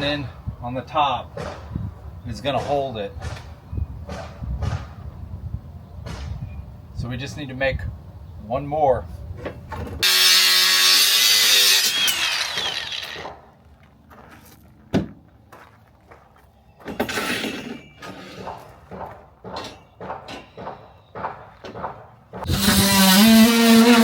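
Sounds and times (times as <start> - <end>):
electric saw cutting wood: 10.0 - 13.4, 22.4 - 24.0.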